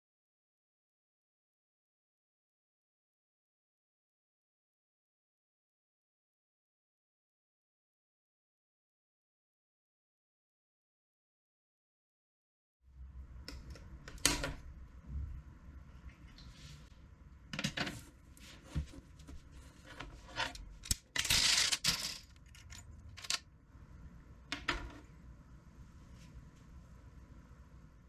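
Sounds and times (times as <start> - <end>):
keyboard parts clicking and clinking: 20.3 - 23.4
clattering rattle: 20.8 - 23.4.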